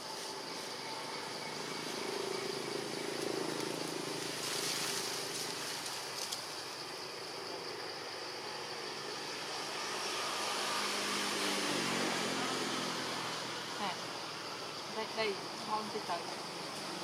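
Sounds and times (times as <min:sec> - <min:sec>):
outdoor background noise: 0:00.0 - 0:17.0.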